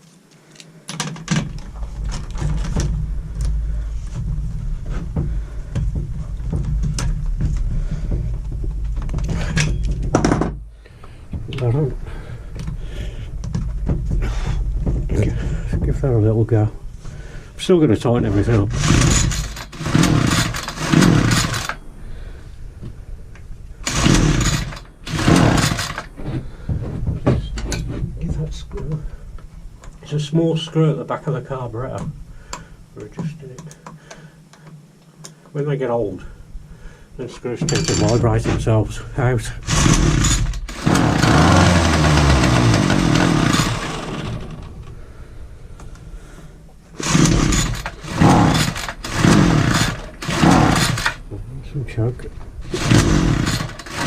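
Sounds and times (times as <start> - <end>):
engine cranking: 18.2 - 21.8, 23.8 - 26.2, 39.6 - 45.0, 47.0 - 51.3, 52.6 - 54.0
strimmer recoil cord pulls: 18.4 - 21.8, 23.8 - 26.1, 39.6 - 45.0, 47.0 - 51.2, 52.6 - 54.0.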